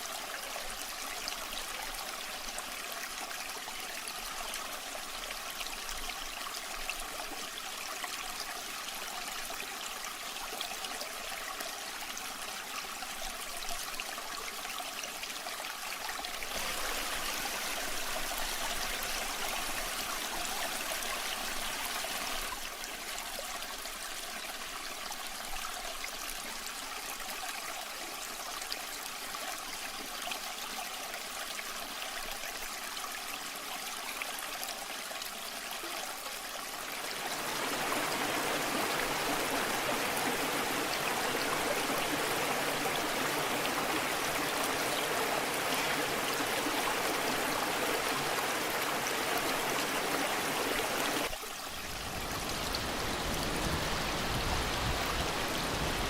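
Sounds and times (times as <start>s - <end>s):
waterfall rushing: 16.4s - 22.5s, 37.1s - 56.0s.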